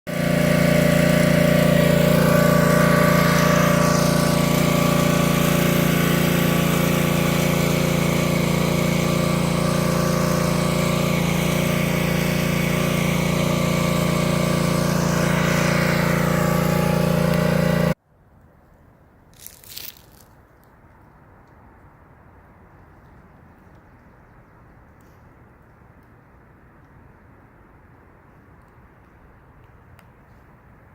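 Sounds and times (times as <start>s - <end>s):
pressure washer engine drone: 0.1s - 18.0s.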